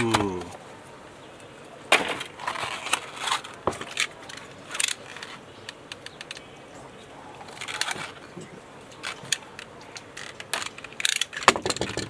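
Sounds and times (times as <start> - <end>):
plastic packaging crinkling: 2.1 - 6.6, 7.4 - 11.5.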